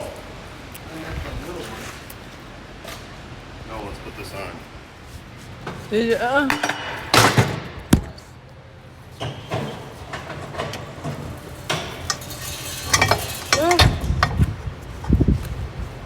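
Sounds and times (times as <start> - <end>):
metal tools clanking on wheel rim: 9.1 - 15.2.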